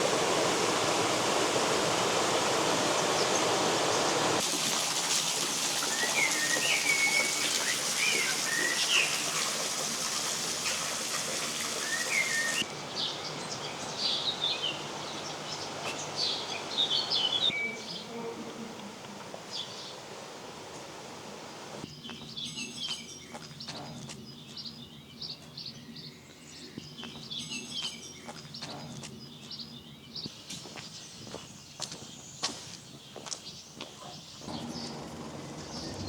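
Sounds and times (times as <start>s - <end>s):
rushing water: 0.0s - 17.6s
songbirds chirping: 0.4s - 4.4s, 5.5s - 36.0s.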